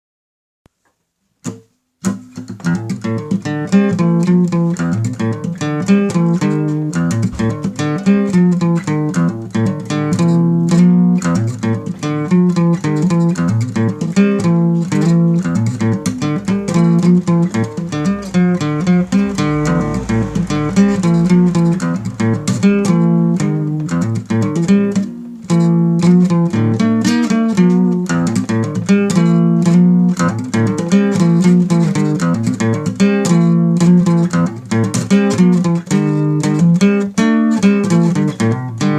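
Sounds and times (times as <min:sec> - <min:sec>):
plucked guitar music: 0:01.4 - 0:38.9.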